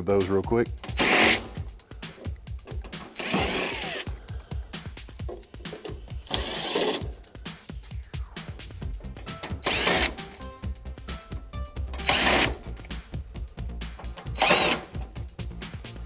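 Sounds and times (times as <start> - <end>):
power drill running: 0.8 - 1.7, 3.0 - 4.3, 5.8 - 7.2, 9.2 - 10.5, 11.8 - 13.0, 14.2 - 15.1.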